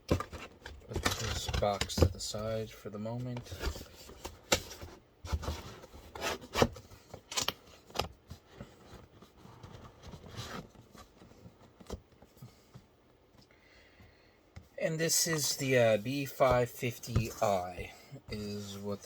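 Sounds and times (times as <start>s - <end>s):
cardboard packaging handled: 0.0s - 2.3s, 3.2s - 12.4s.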